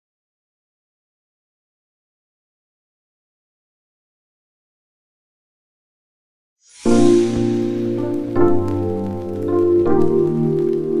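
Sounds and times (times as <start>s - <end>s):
high hiss: 6.6s - 11.0s.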